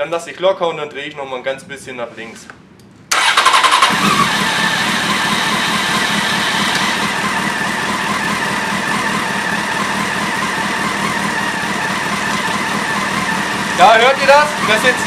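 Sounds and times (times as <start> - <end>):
motorcycle engine idling: 3.2 - 15.0.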